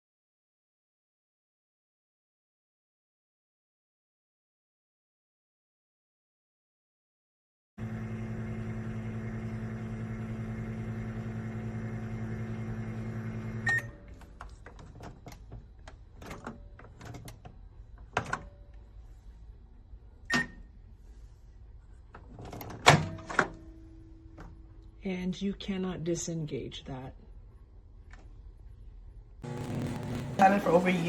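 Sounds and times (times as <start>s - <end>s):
microwave oven humming: 7.8s - 14.2s, 29.4s - 31.0s.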